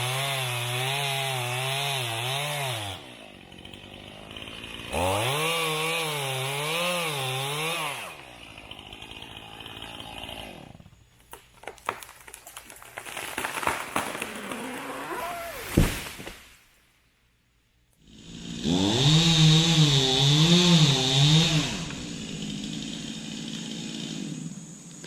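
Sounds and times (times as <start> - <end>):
chainsaw cutting at full throttle: 0.0 - 11.1, 13.1 - 16.0, 18.0 - 25.0
sharp snaps and knocks: 11.2 - 14.9.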